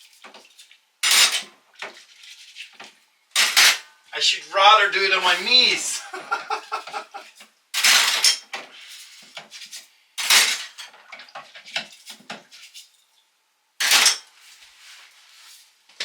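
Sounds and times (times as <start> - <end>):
dishes and cutlery clinking: 13.8 - 14.4.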